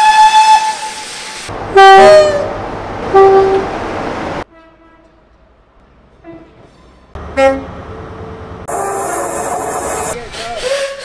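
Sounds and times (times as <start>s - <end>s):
two-tone train horn: 1.7s - 2.5s, 3.1s - 3.7s, 4.5s - 5.2s, 7.3s - 7.7s.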